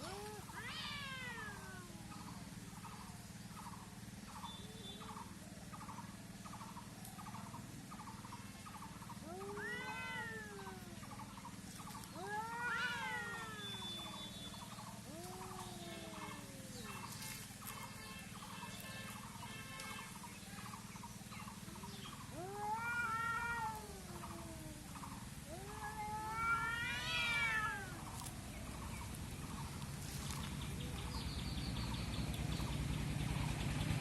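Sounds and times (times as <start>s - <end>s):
cats yowling: 0.0s - 2.5s, 9.2s - 18.8s, 21.7s - 29.6s.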